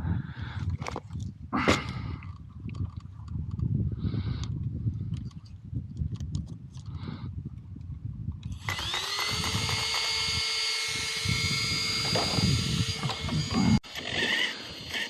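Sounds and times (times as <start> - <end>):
electric motor whine: 8.5 - 15.0.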